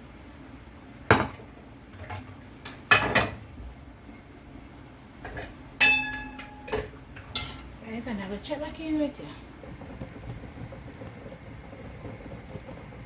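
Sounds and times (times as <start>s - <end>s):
metal pots clanking: 5.2s - 7.7s.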